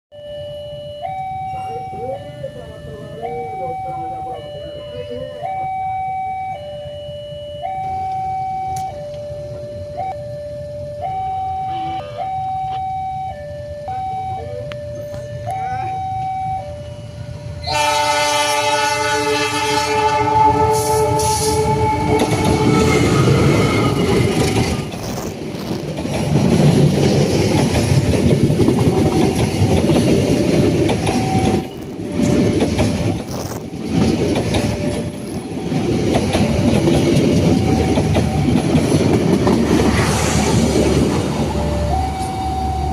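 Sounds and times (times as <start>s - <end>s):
level crossing two-tone alarm: 0.1s - 24.9s, 28.8s - 31.8s, 34.6s - 40.0s, 41.3s - 42.9s
train horn: 11.6s - 12.3s, 17.6s - 24.9s
train wheels rumbling and clattering: 14.7s - 42.9s.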